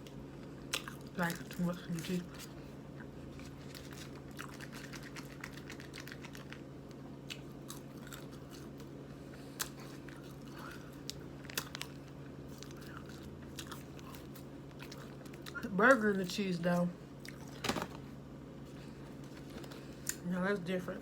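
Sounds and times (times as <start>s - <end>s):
person chewing crunchy food: 0.0s - 15.6s, 17.2s - 17.6s.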